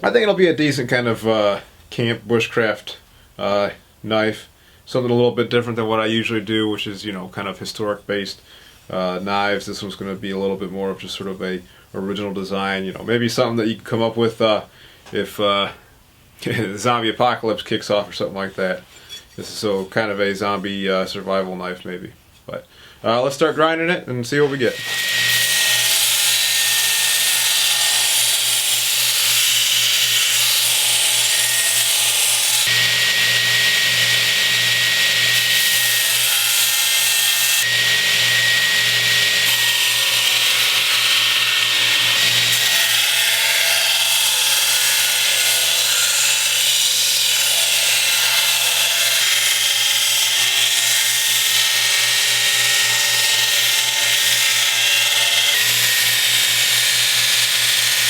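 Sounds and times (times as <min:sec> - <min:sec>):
belt grinder grinding steel: 0:24.5 - 0:58.0.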